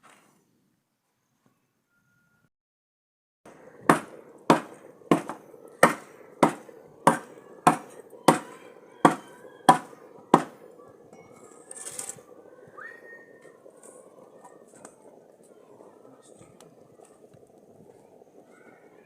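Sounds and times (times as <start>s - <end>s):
blade chopping strikes: 3.9s - 10.6s.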